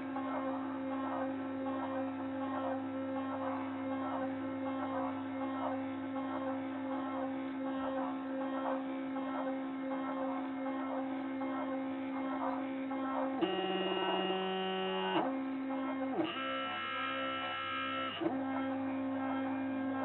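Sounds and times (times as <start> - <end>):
cnc router spindle motor humming: 4.8 - 20.0.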